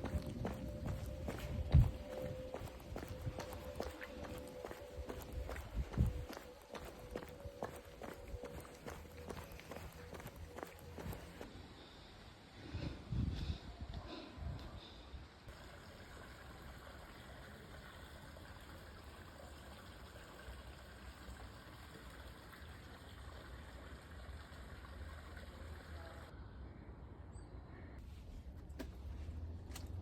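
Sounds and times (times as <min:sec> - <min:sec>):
faint flowing water: 0:00.0 - 0:11.5, 0:15.5 - 0:26.4.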